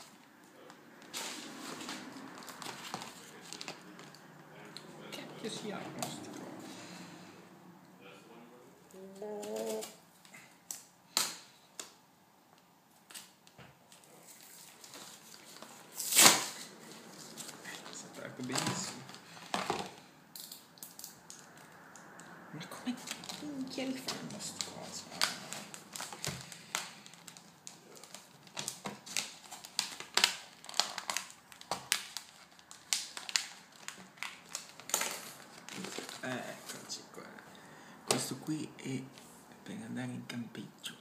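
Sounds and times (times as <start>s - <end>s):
packaging rustling: 1.0s - 4.3s, 9.4s - 11.5s, 12.9s - 21.7s, 22.9s - 36.9s.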